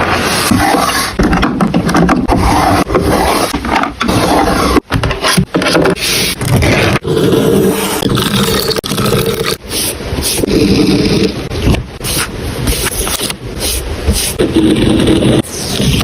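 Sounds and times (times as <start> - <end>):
paper scraping and rustling: 12.1 - 13.4.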